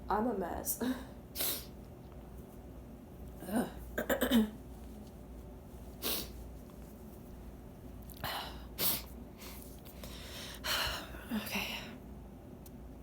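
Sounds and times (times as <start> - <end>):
woman sniffing congested nose: 1.4 - 1.8, 6.0 - 6.4.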